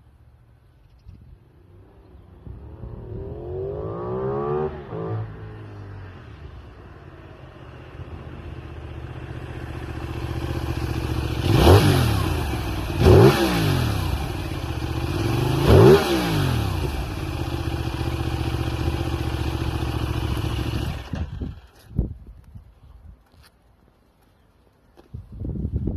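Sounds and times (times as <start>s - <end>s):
motorcycle engine revving: 1.7s - 22.0s.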